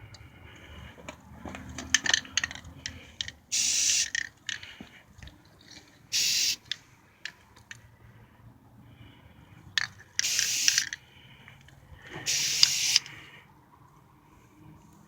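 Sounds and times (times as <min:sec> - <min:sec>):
aerosol can spraying: 0:03.5 - 0:04.2, 0:06.1 - 0:06.6, 0:10.2 - 0:10.8, 0:12.3 - 0:13.1
metallic clicks of can handled: 0:09.8 - 0:11.0.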